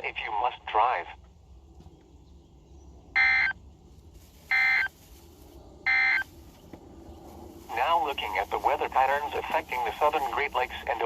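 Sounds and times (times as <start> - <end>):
faint radio hiss: 0.0 - 1.3, 7.7 - 11.0
digital data tone bursts: 3.2 - 3.6.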